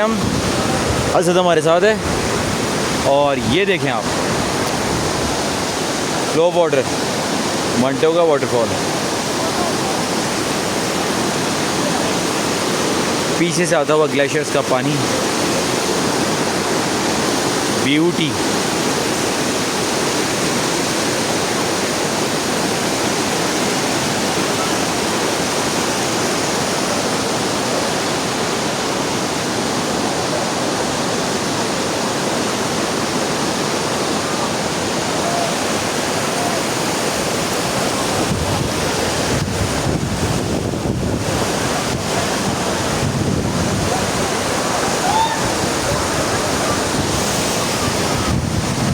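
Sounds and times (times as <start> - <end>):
wind rumbling on microphone: 0.0 - 6.3, 36.1 - 48.9
waterfall rushing: 0.0 - 48.9.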